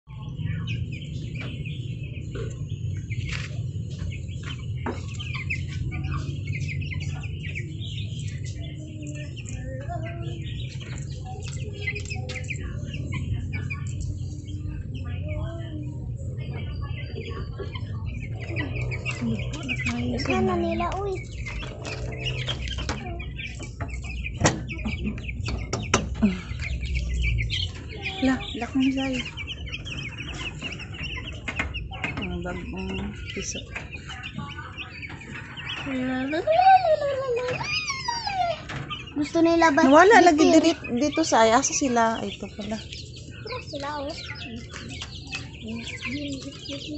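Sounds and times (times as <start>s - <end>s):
chicks peeping: 0.0s - 46.9s.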